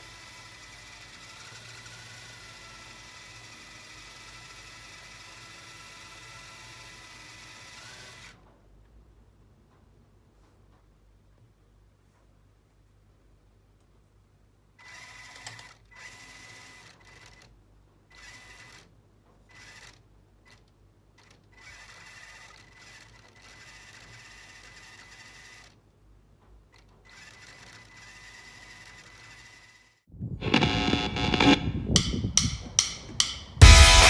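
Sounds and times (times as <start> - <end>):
toy car electric motors whirring: 0.0 - 8.4, 14.8 - 25.8, 26.7 - 30.0.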